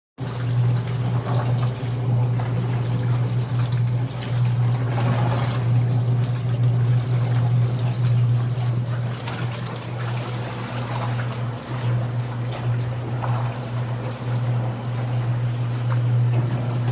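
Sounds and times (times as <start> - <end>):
washing machine motor hum: 0.2 - 16.9
water sloshing and splashing: 0.2 - 16.9.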